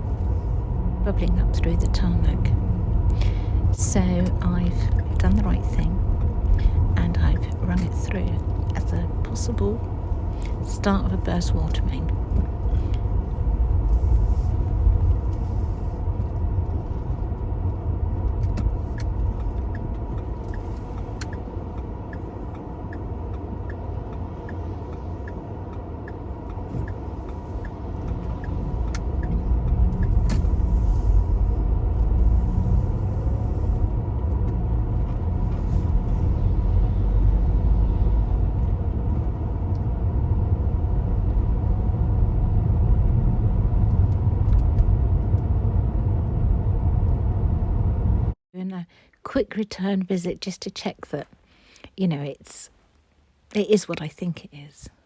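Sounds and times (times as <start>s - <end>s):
light regular ticking: 0.0s - 14.2s, 16.0s - 33.6s
car engine and road rumble: 0.0s - 48.4s.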